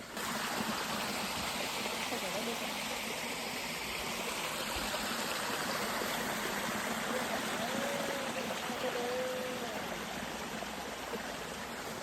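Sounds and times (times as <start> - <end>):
stream water running: 0.0 - 12.0.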